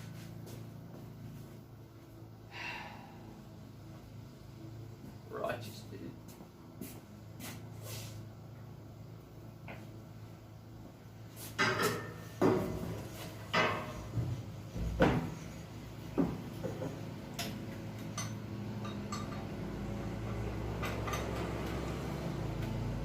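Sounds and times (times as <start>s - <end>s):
low steady hum: 0.0s - 6.4s
metal tools clanking: 16.7s - 19.6s.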